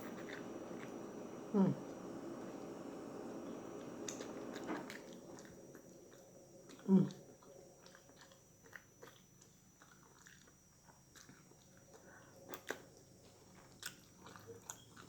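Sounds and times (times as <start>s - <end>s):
person chewing: 0.0s - 1.1s, 4.0s - 15.0s.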